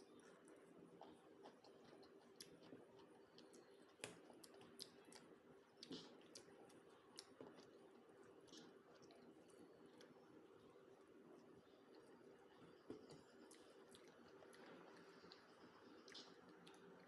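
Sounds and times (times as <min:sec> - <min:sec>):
person chewing food: 0:00.0 - 0:17.0.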